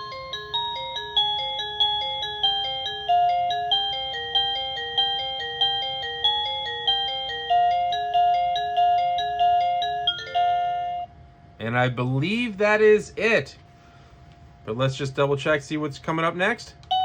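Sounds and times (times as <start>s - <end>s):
electronic doorbell chime melody: 0.0s - 11.2s.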